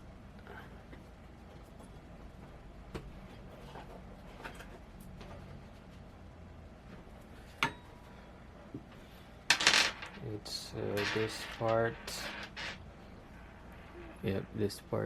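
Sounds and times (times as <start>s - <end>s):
hardware parts clicking and clinking: 9.5s - 12.8s.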